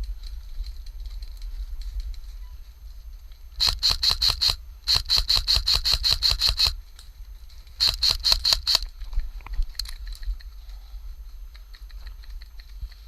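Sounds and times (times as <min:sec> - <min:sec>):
airsoft gun firing sharp shots: 0:03.6 - 0:06.8, 0:07.8 - 0:08.9.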